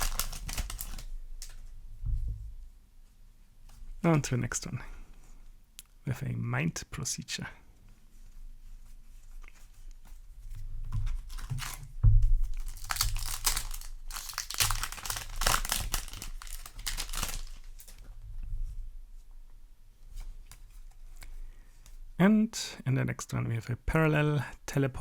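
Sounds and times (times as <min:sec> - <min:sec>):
foil wrapper tearing and crinkling: 0:00.0 - 0:01.5, 0:11.3 - 0:18.0.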